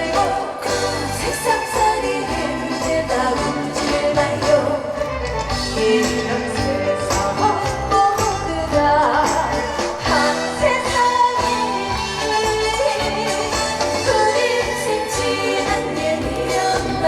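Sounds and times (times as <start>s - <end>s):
amplified backing track with beat: 0.0s - 17.0s
person singing live: 0.0s - 17.0s.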